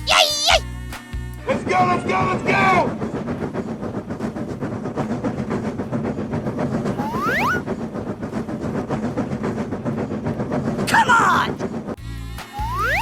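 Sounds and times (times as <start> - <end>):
train rail clatter: 0.9 - 12.6
rising whistle-like glides: 6.9 - 7.8, 12.5 - 13.0.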